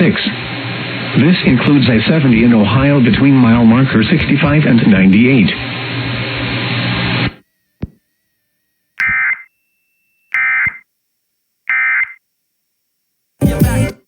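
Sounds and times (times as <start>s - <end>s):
screechy digital data tones: 9.0s - 9.5s, 10.3s - 10.8s.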